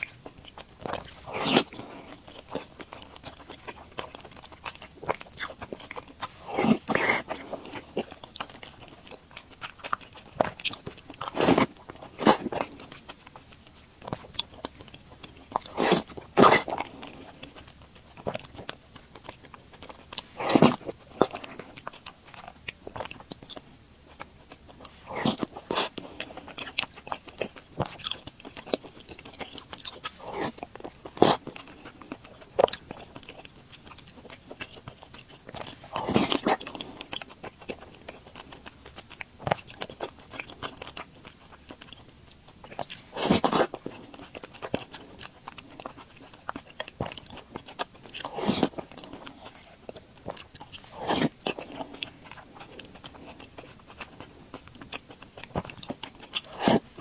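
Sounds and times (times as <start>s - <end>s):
chewing: 0.0s - 57.0s
wet mouth clicks: 50.5s - 57.0s.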